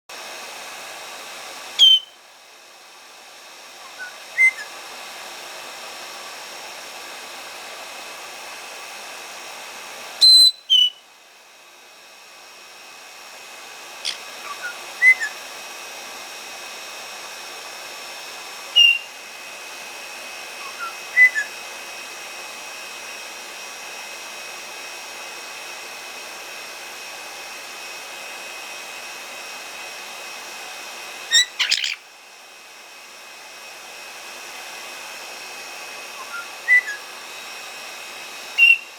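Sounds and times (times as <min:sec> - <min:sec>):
hair dryer blowing: 0:00.1 - 0:38.9
parrot rising whistles: 0:01.8 - 0:02.2, 0:03.9 - 0:04.8, 0:10.2 - 0:11.1, 0:14.0 - 0:15.4, 0:18.8 - 0:19.1, 0:20.6 - 0:21.6, 0:31.3 - 0:32.0, 0:36.2 - 0:37.1, 0:38.6 - 0:38.9
parrot shrill screeches: 0:01.8 - 0:02.2, 0:03.9 - 0:04.7, 0:10.2 - 0:11.0, 0:14.0 - 0:15.4, 0:31.3 - 0:32.0, 0:36.2 - 0:37.0, 0:38.6 - 0:38.9.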